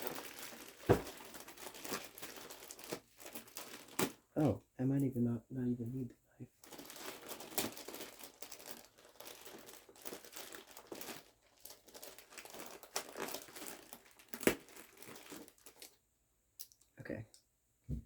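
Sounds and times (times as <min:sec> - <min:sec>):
cardboard packaging crinkling and tearing: 0:00.0 - 0:04.3, 0:06.6 - 0:16.0.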